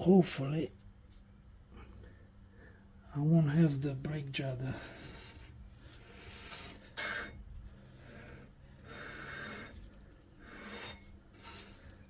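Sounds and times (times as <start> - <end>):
man breathing: 1.7 - 3.0, 4.6 - 12.0.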